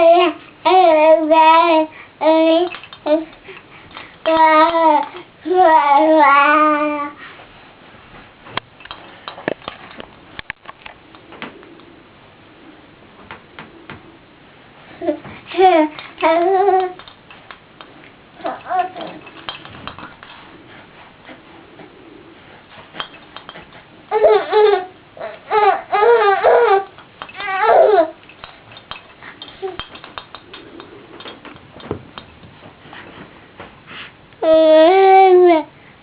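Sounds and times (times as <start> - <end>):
baby cooing and babbling: 0.0 - 3.3, 4.3 - 7.2, 15.0 - 17.0, 18.4 - 19.3, 24.1 - 28.2, 29.5 - 29.8, 34.4 - 35.7.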